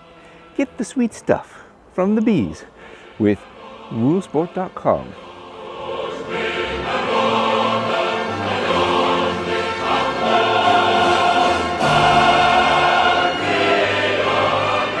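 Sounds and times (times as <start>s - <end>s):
choir singing sustained chords: 0.0s - 15.0s
orchestral backing: 3.2s - 15.0s.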